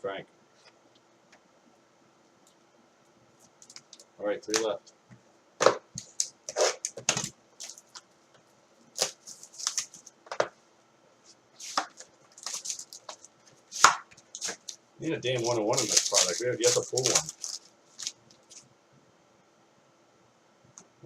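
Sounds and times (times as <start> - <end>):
cards and box taps and rustles: 5.6 - 8.0, 11.7 - 14.8, 15.4 - 18.6.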